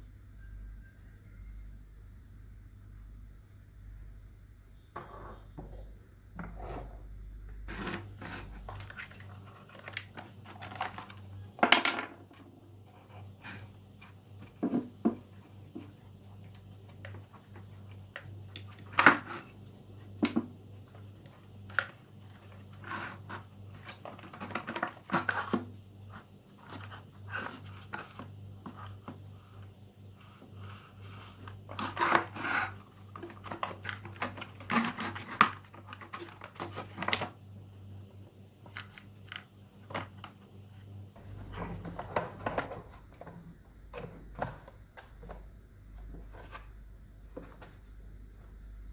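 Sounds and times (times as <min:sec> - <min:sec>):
faint low hum: 0:00.0 - 0:48.9
scraping and rubbing: 0:05.0 - 0:11.4, 0:21.0 - 0:37.2
plastic parts clicking and knocking: 0:07.7 - 0:12.5, 0:20.1 - 0:37.4, 0:38.6 - 0:40.4, 0:41.2 - 0:45.5.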